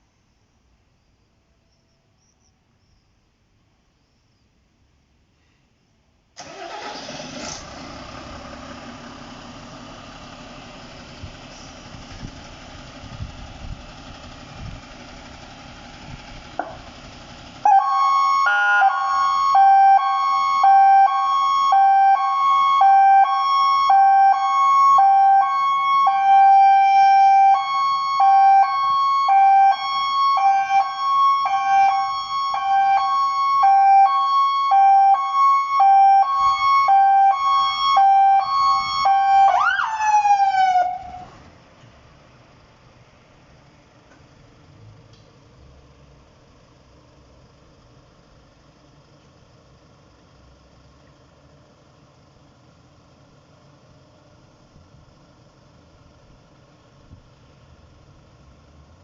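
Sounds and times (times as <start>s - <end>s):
fire engine rumbling: 6.4s - 59.0s
hi-lo electronic siren: 17.6s - 41.4s.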